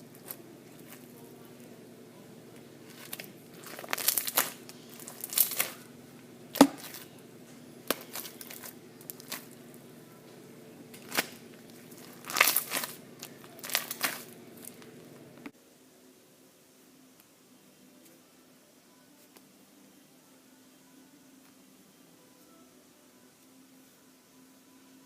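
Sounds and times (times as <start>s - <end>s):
slime crackling and popping: 2.9s - 5.8s, 7.9s - 9.6s, 10.9s - 14.9s.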